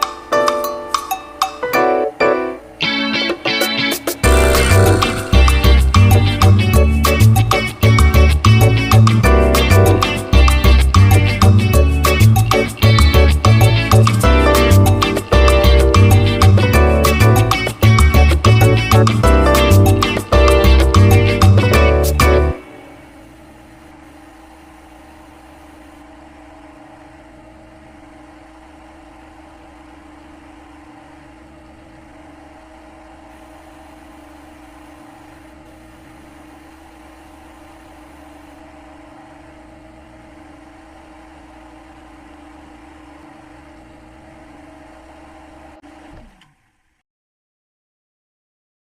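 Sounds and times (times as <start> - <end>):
steady mechanical hum: 22.5 - 47.0.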